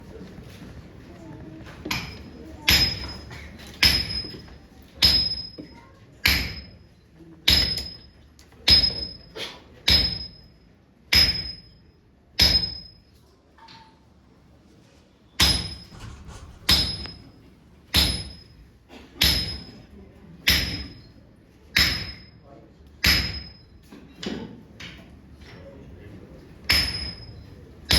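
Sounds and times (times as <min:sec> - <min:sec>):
hammer striking steel on anvil: 0:01.9 - 0:06.8, 0:07.5 - 0:09.3, 0:09.9 - 0:11.8, 0:12.4 - 0:13.0, 0:15.4 - 0:18.6, 0:19.2 - 0:19.8, 0:20.4 - 0:21.1, 0:21.8 - 0:22.4, 0:23.0 - 0:24.4, 0:26.7 - 0:27.9.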